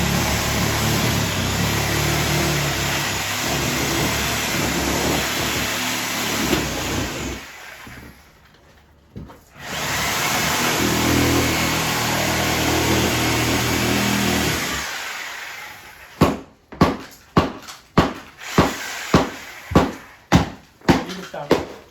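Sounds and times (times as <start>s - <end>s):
reciprocating saw cutting drywall: 0.0s - 8.3s, 9.5s - 16.2s, 18.3s - 20.4s
sharp knocks: 16.2s - 21.8s.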